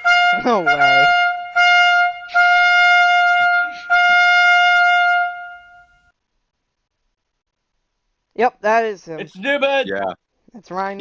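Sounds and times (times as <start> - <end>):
brass-like horn blast: 0.0 - 6.0.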